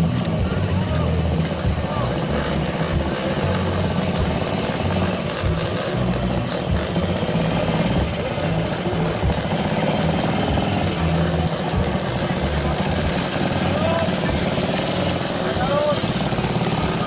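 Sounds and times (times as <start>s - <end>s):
motorcycle engine chugging: 0.0s - 17.0s
surrounding motor noise: 0.0s - 17.0s.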